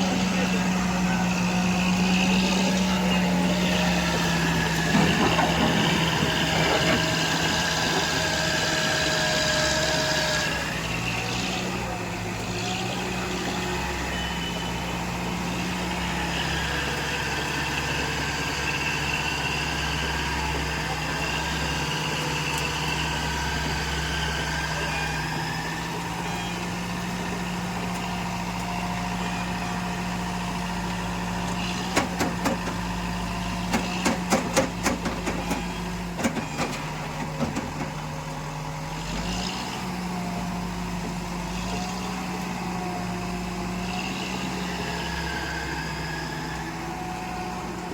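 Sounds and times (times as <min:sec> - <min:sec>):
heavy machine engine rumbling: 0:00.0 - 0:47.9
sharp clanks and knocks: 0:04.2 - 0:08.1, 0:31.5 - 0:33.0, 0:33.6 - 0:38.1.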